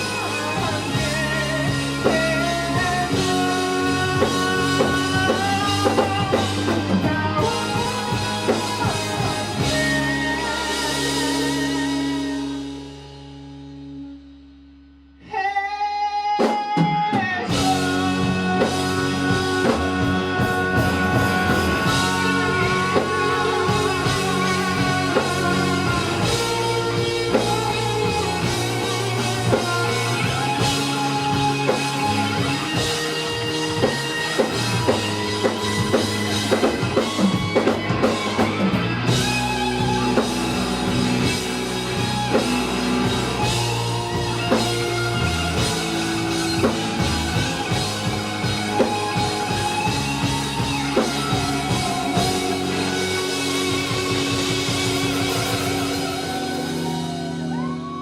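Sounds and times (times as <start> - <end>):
live rock band playing: 0.0 - 58.0
lead electric guitar solo: 17.4 - 58.0.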